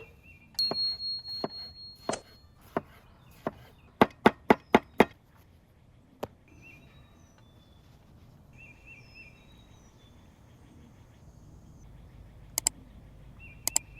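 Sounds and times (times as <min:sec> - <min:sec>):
birds whistling and trilling: 0:00.0 - 0:13.9.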